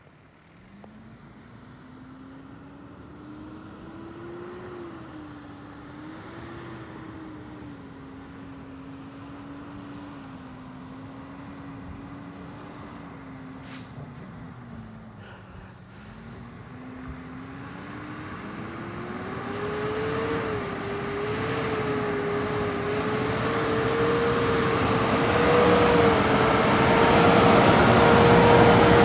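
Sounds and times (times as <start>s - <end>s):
fire engine motor running: 10.4s - 29.0s.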